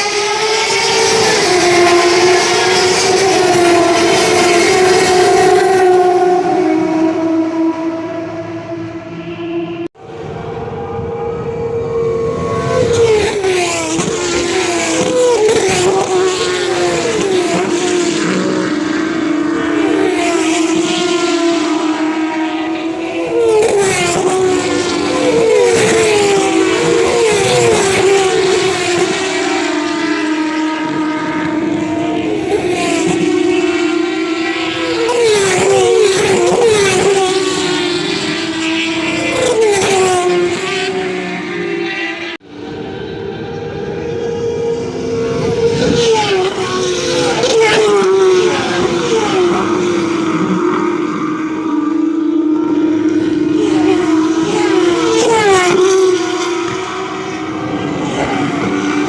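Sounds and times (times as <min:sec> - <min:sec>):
cars passing by: 0:00.0 - 0:59.0
race car engines: 0:00.0 - 0:59.0.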